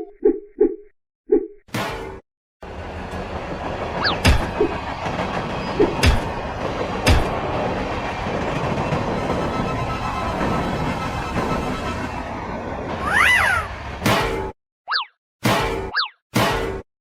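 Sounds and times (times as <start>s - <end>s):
train rumbling on rails: 2.6s - 14.5s.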